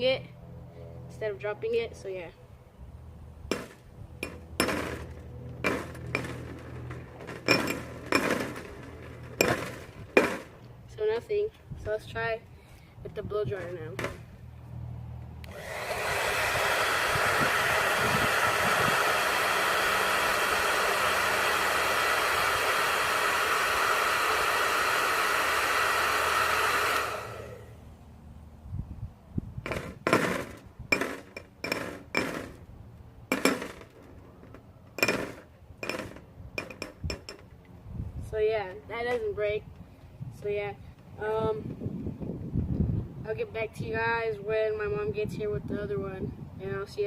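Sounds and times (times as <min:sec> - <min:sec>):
blow dryer running: 0:03.5 - 0:10.8, 0:15.4 - 0:27.9, 0:29.7 - 0:32.7, 0:33.3 - 0:37.4.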